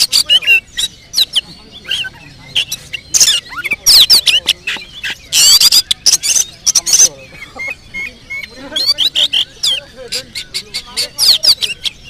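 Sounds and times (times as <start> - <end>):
bird singing: 0.0 - 12.0.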